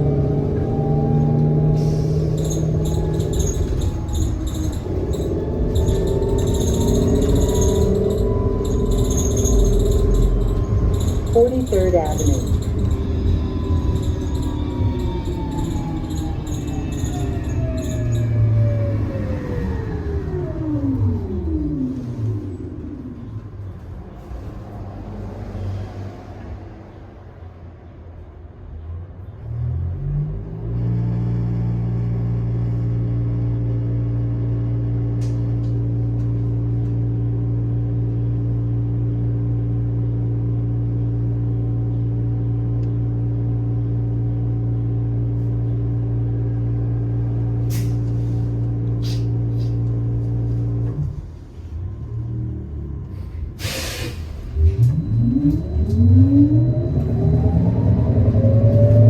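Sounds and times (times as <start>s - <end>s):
traction motor whine: 0.0s - 22.4s, 53.6s - 59.0s
short hiss of air: 53.6s - 54.4s.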